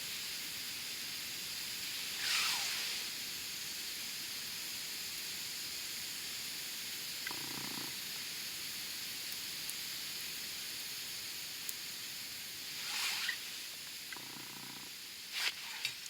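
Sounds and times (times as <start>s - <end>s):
campfire burning with hiss: 0.0s - 16.0s.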